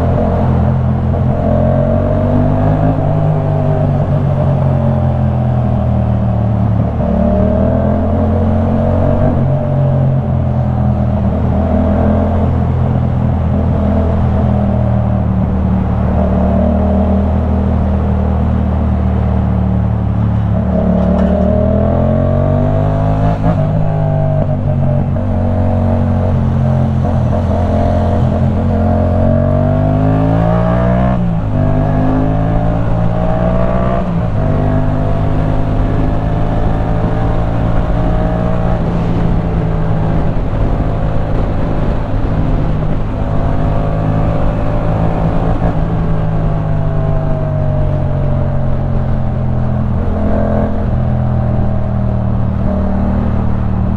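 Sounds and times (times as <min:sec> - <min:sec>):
motorcycle engine revving: 0:00.0 - 0:53.9.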